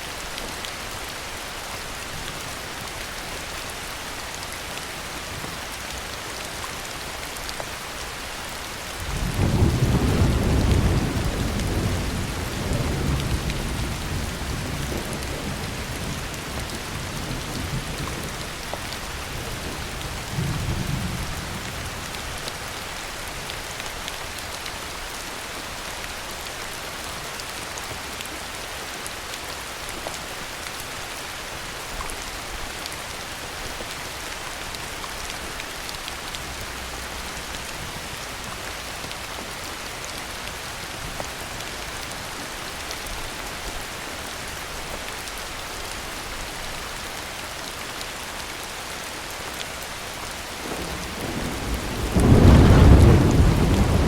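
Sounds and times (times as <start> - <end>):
heavy rain: 0.0 - 54.0
thunder rumbling: 50.6 - 54.0.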